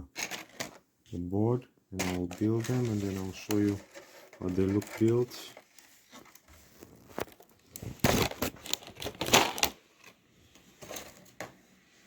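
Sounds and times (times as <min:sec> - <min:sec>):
plastic rustling and rattling: 0:00.1 - 0:00.9, 0:02.0 - 0:11.6.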